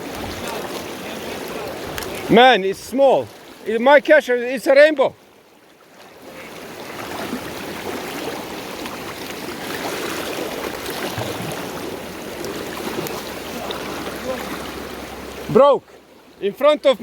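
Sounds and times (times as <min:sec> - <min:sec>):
river rushing: 0:00.0 - 0:17.0.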